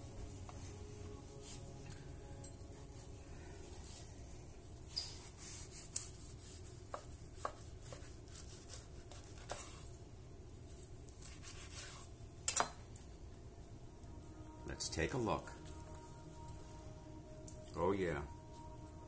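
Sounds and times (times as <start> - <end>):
knife scraping strokes: 4.8 - 9.9, 11.2 - 12.1
knife sawing through pastry: 5.2 - 9.9, 11.2 - 12.1.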